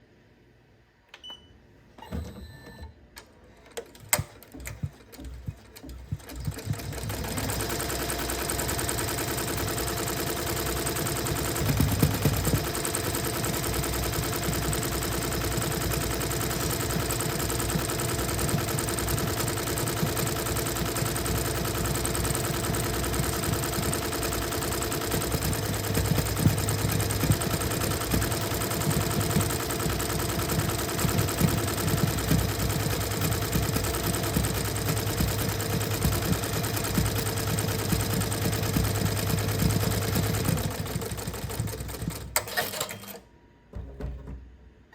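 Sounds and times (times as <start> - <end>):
sewing machine stitching: 3.5 - 44.5
clicks and knocks: 42.4 - 44.9.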